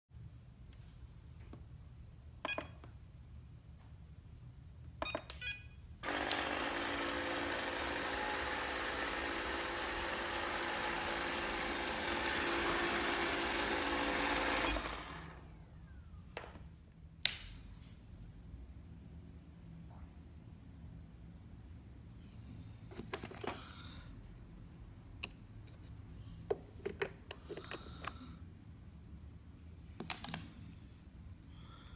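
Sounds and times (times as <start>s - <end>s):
loud steady whirring: 6.0s - 15.6s.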